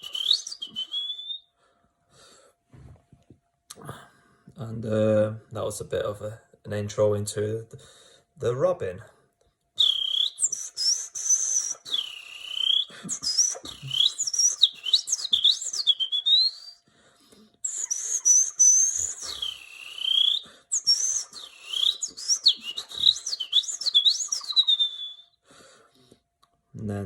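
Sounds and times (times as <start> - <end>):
whistled birdsong imitation: 0.0 - 1.5, 9.8 - 16.8, 17.6 - 25.4.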